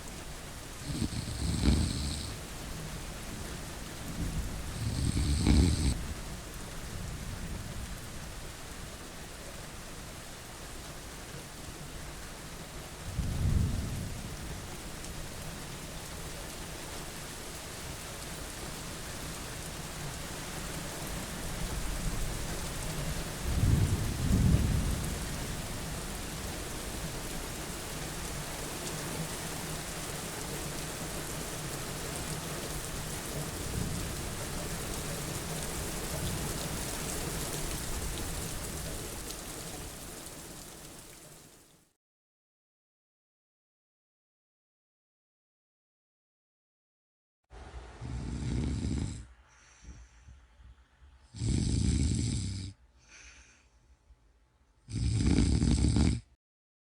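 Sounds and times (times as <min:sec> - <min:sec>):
steady rain falling: 0:00.0 - 0:41.9
thunder rumbling: 0:13.1 - 0:14.7, 0:23.4 - 0:26.6.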